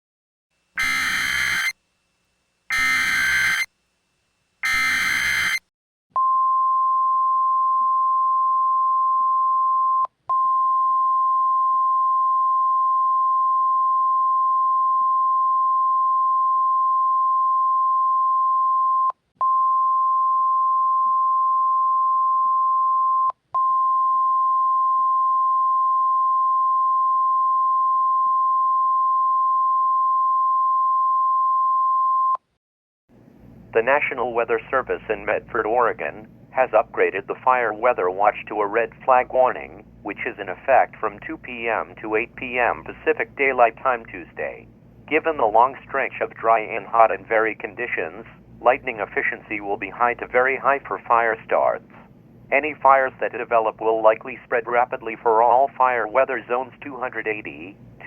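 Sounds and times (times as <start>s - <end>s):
digital data bursts: 0.8s - 1.7s
steady alarm tone: 0.8s - 1.8s, 2.7s - 3.7s, 4.6s - 5.6s.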